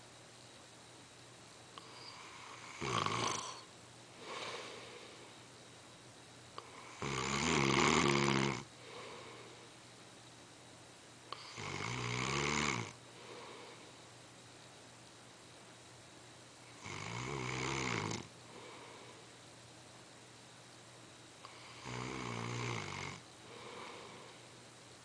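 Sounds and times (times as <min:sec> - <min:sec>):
man snoring: 0:01.8 - 0:04.9, 0:06.6 - 0:09.4, 0:11.4 - 0:13.6, 0:16.8 - 0:18.8, 0:21.5 - 0:24.4
soft breath out: 0:03.4 - 0:05.5, 0:08.8 - 0:09.8, 0:13.1 - 0:14.1, 0:18.5 - 0:19.4, 0:23.4 - 0:24.6.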